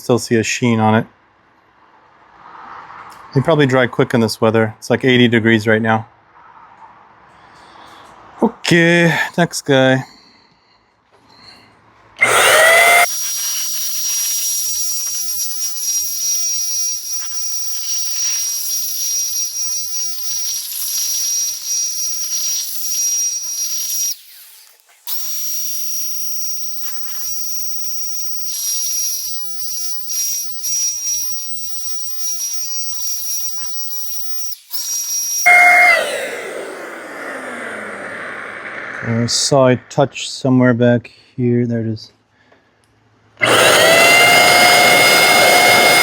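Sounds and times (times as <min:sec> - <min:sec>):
electric paint sprayer whining: 0:12.2 - 0:26.0, 0:28.5 - 0:39.1, 0:43.4 - 0:46.0.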